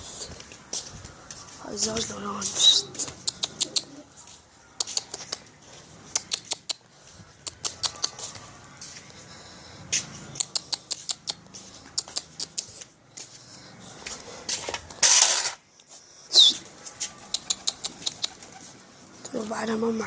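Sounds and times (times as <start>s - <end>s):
pigeons pecking on hard surface: 3.0s - 4.0s, 17.1s - 18.7s.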